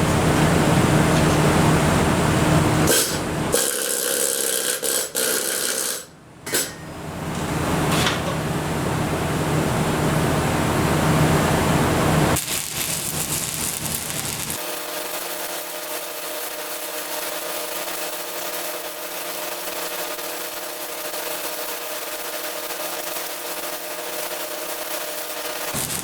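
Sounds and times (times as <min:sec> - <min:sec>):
welding arc hissing: 0:02.9 - 0:06.1, 0:12.4 - 0:26.0.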